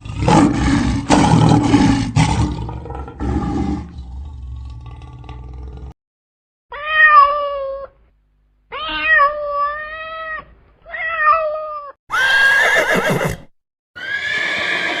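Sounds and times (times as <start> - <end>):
horse whinny: 12.1 - 15.0.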